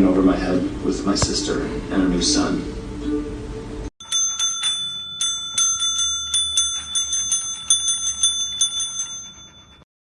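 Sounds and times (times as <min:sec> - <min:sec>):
small metal bell struck rapidly: 0:04.0 - 0:09.9.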